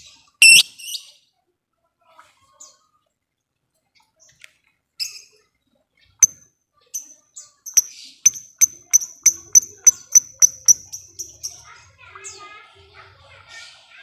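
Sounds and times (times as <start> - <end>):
lovebird clicking chirps: 0.4 - 0.7, 7.7 - 11.6.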